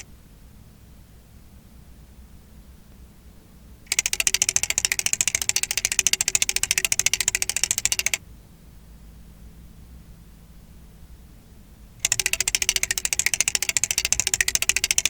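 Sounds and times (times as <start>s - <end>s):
flip-dot display clicking: 3.9s - 8.2s, 12.0s - 15.0s.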